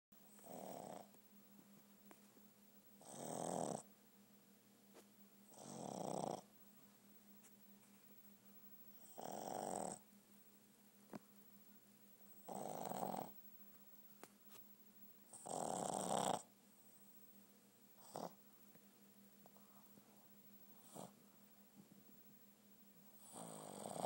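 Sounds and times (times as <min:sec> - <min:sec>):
dog snoring: 0:00.2 - 0:01.2, 0:03.0 - 0:03.9, 0:05.4 - 0:06.5, 0:09.0 - 0:10.0, 0:12.4 - 0:13.4, 0:15.3 - 0:16.5, 0:18.0 - 0:18.4, 0:20.7 - 0:21.2, 0:23.1 - 0:24.0.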